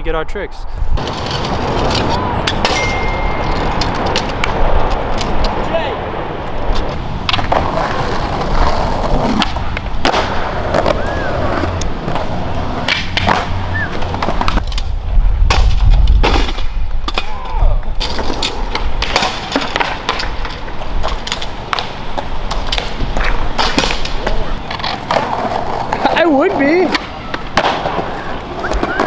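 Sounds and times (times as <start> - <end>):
skateboard wheels rolling on concrete: 0.2 - 29.0
skateboard clacks: 1.0 - 5.7, 6.8 - 29.0.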